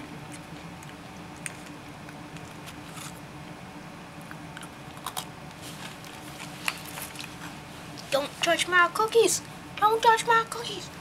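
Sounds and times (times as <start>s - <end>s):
person chewing cookie: 0.0s - 3.3s, 4.2s - 8.0s
low room hum: 0.0s - 11.0s.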